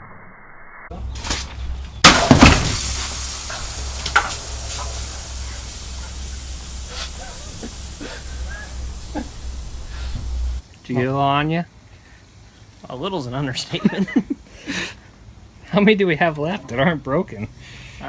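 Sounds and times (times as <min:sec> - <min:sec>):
cans bursting with loud crack: 0:01.2 - 0:09.6
soda spraying hiss: 0:02.0 - 0:15.6.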